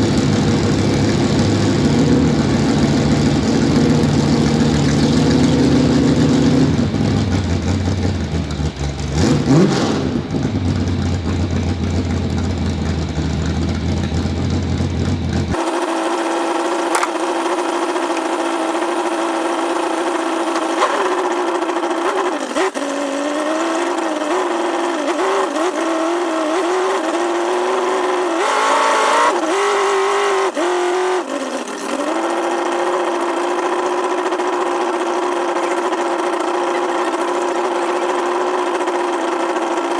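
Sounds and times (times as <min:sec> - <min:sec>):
truck engine revving: 0:15.5 - 0:39.9.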